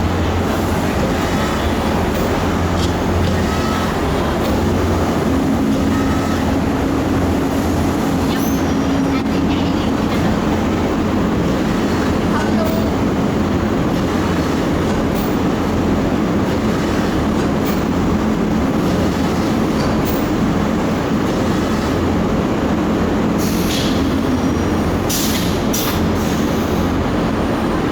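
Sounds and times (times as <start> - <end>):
cutting machine rumbling: 0.0 - 22.3.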